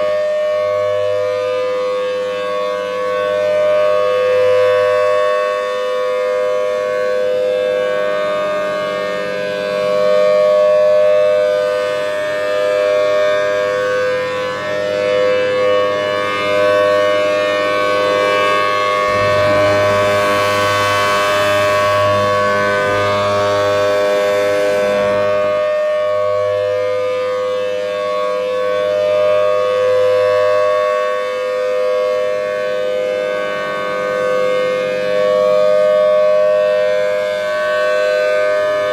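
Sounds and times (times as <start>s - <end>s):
two-tone warning siren: 0.0s - 38.9s
rushing noise: 18.6s - 25.6s.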